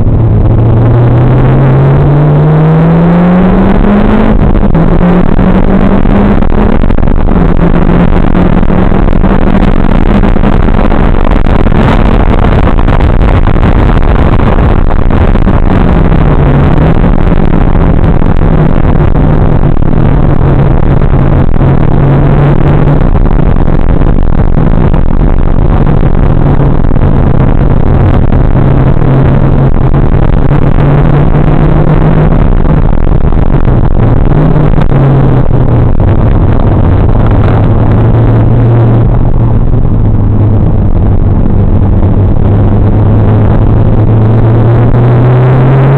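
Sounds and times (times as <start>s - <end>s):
car engine running hard: 0.0s - 45.9s
road noise: 0.0s - 45.9s
wind noise: 0.0s - 45.9s.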